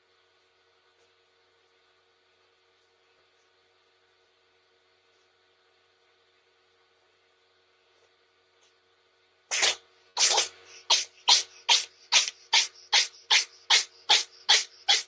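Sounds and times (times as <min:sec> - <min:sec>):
cat sneezing: 0:09.5 - 0:15.0.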